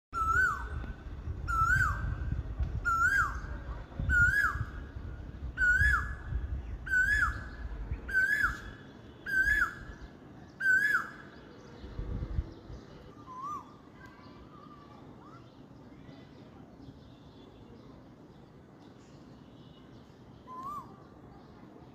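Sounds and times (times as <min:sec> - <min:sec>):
koel bird calling: 0:06.9 - 0:11.4.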